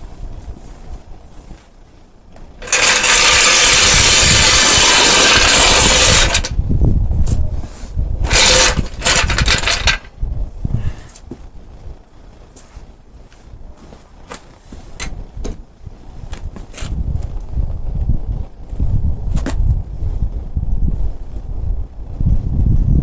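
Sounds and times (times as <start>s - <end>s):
impact wrench running: 2.6s - 6.6s, 8.2s - 10.1s.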